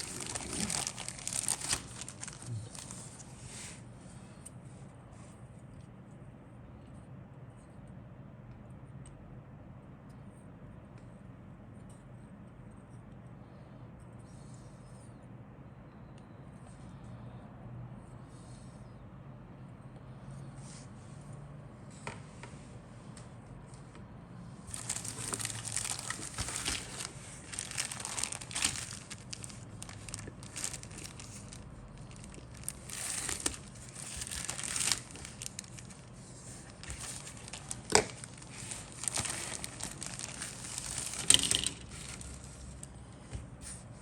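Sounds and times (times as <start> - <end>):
plastic packaging crinkling: 0.0 - 3.3, 24.7 - 42.9.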